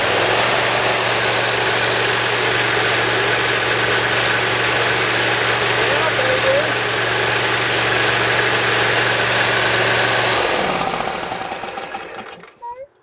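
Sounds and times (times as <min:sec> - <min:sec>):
lawn mower engine running: 0:00.0 - 0:12.9.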